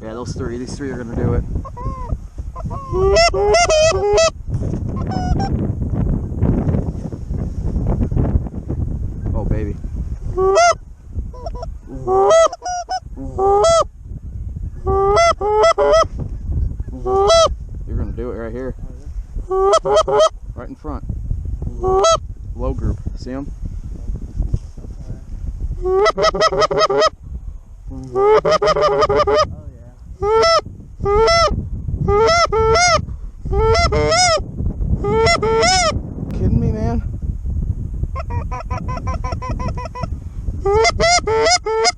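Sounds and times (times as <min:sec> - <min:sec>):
goose call honking: 0:01.6 - 0:04.3, 0:05.0 - 0:05.5, 0:10.4 - 0:10.8, 0:11.4 - 0:13.9, 0:14.8 - 0:16.1, 0:17.0 - 0:17.5, 0:19.5 - 0:20.3, 0:25.8 - 0:27.1, 0:28.1 - 0:29.5, 0:30.2 - 0:31.5, 0:32.1 - 0:34.4, 0:35.0 - 0:36.0, 0:38.2 - 0:41.9.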